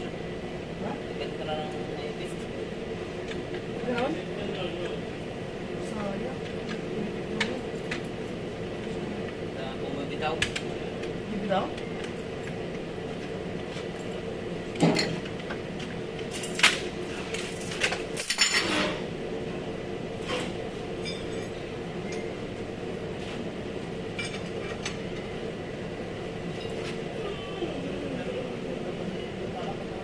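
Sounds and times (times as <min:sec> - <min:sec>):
steady hum: 0:00.0 - 0:30.0
metal tools clinking and clanking: 0:17.6 - 0:19.0.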